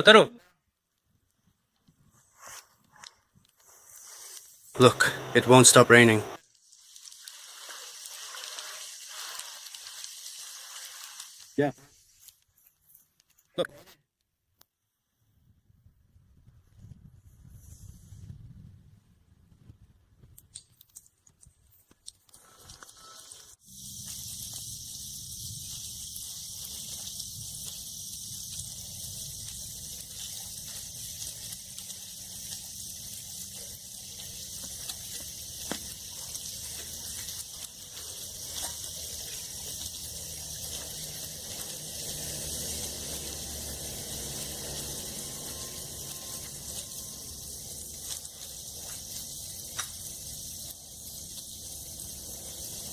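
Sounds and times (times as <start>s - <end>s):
steady rain hiss: 3.6s - 12.3s, 22.5s - 52.9s.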